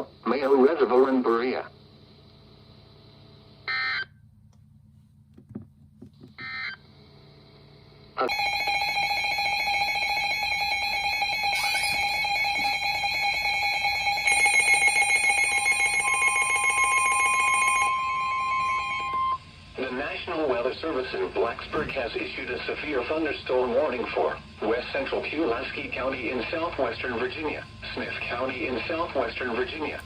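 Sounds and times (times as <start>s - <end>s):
higher electronic tone: 8.3s - 19.4s
steady electronic alert tone: 10.3s - 19.4s
digital data bursts: 11.3s - 17.8s.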